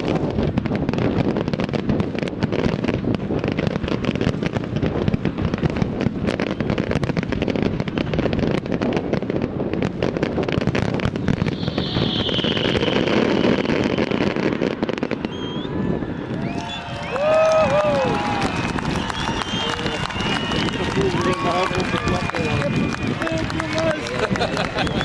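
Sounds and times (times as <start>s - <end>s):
fireworks bursts and crackling: 0.0s - 25.0s
hissing firework whistle: 11.1s - 23.9s.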